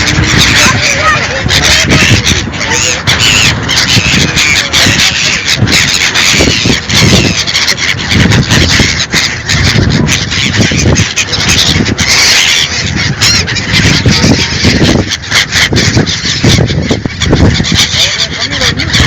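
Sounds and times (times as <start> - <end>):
steady background rush: 0.0 - 16.0
birds calling harshly: 0.0 - 19.0.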